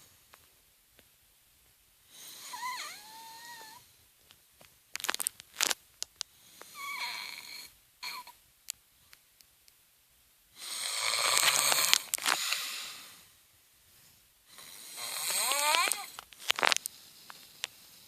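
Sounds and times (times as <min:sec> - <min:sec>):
woman snoring: 0:02.1 - 0:03.8, 0:06.5 - 0:08.4, 0:10.6 - 0:13.2, 0:14.5 - 0:16.2.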